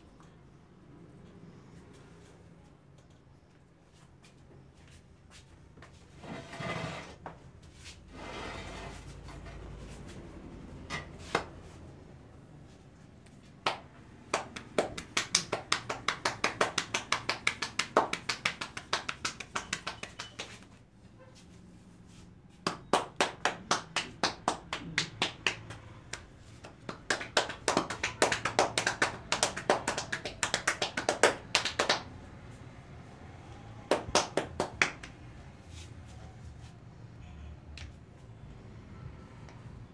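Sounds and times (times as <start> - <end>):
hands slapping on a head: 13.6 - 20.7.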